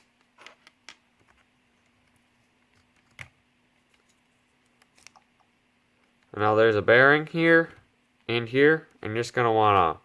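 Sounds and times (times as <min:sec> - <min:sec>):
faint clicks of small parts handled: 0:00.1 - 0:06.3.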